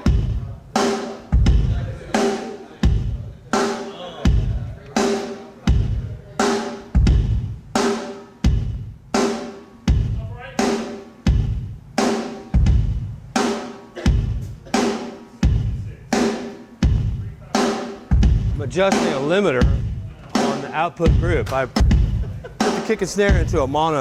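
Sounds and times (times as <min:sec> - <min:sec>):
snare drum crack: 0:18.2 - 0:23.9.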